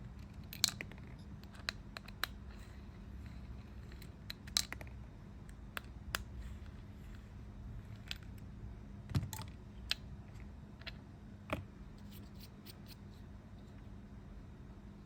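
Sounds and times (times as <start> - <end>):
small parts clicking and tapping: 0.0 - 2.6, 3.2 - 6.3
low steady hum: 0.0 - 15.0.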